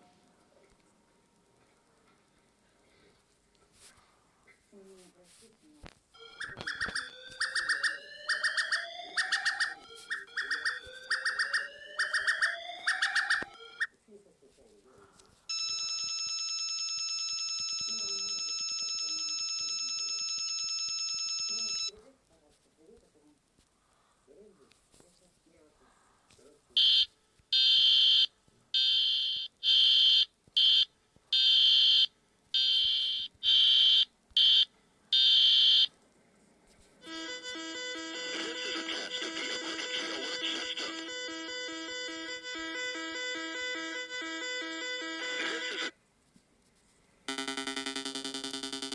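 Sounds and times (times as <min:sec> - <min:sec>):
electronic chirping alarm tone: 0:06.2 - 0:13.9, 0:17.8 - 0:21.9, 0:26.8 - 0:35.9, 0:37.0 - 0:45.9, 0:47.3 - 0:48.9
music: 0:37.1 - 0:43.9.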